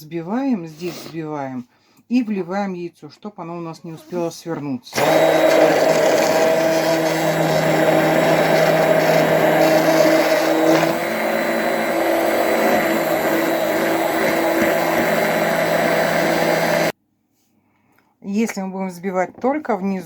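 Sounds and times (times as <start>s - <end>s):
immersion blender running: 4.9s - 17.0s.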